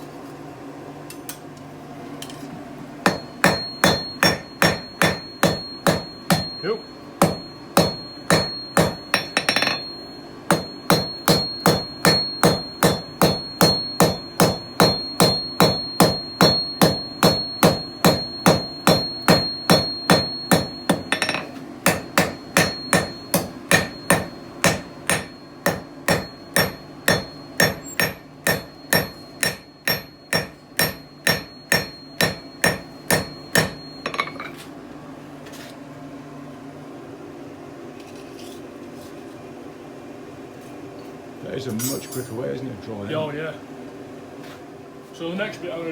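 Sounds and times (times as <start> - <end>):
hammer striking steel on anvil: 3.0 - 34.6
steady high ring: 3.0 - 34.7.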